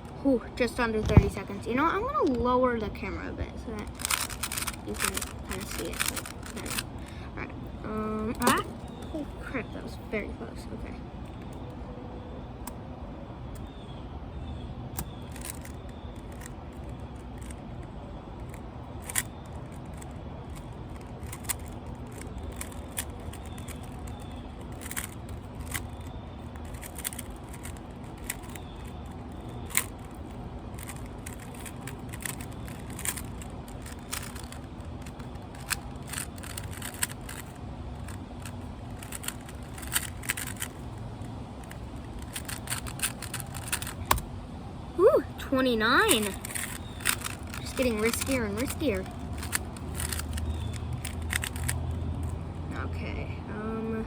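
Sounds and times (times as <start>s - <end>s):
low steady hum: 0.0s - 54.0s
puzzle cube plastic clicking: 3.8s - 9.8s, 14.9s - 44.3s, 45.3s - 52.4s.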